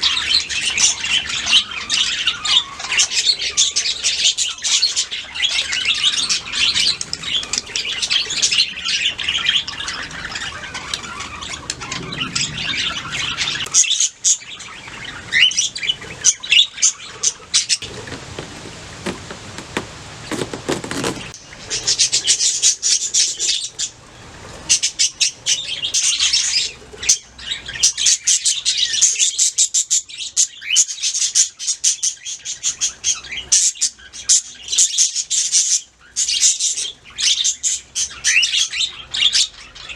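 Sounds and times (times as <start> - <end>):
budgerigars chirping: 0.0 - 19.6.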